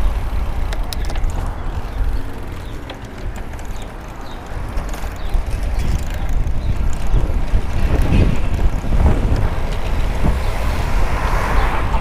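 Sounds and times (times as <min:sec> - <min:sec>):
road noise: 0:00.0 - 0:12.0
wind buffeting microphone: 0:00.0 - 0:12.0.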